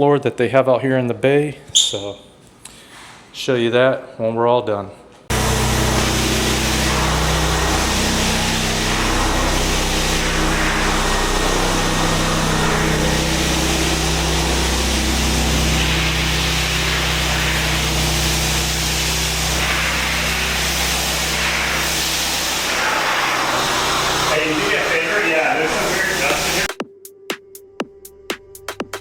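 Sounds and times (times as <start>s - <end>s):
floor grinder motor drone: 5.3s - 26.7s
grinding hiss: 5.3s - 26.7s.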